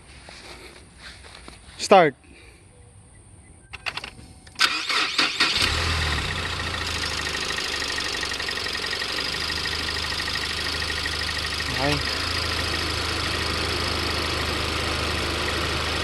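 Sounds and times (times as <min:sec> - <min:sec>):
sharp clicks: 0:03.7 - 0:04.8
starter cranking: 0:03.8 - 0:16.0
car engine idling: 0:04.9 - 0:16.0.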